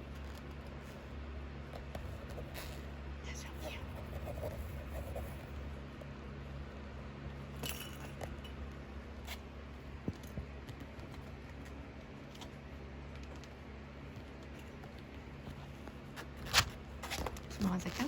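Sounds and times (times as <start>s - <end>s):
steady low hum: 0.0s - 18.0s
kitten paws clicking and tapping: 9.2s - 18.0s.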